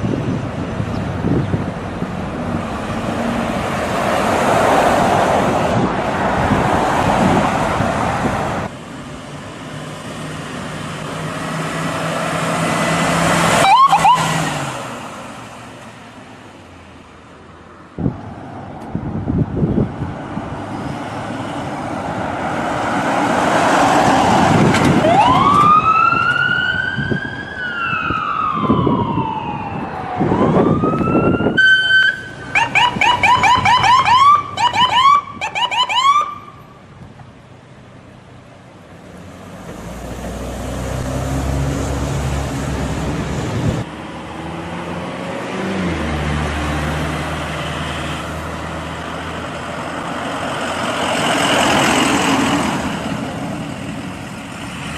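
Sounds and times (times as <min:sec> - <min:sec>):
road noise: 0:00.0 - 0:54.9
vehicle engine rumbling: 0:00.0 - 0:54.9
ambulance siren: 0:13.5 - 0:14.4, 0:25.0 - 0:36.6.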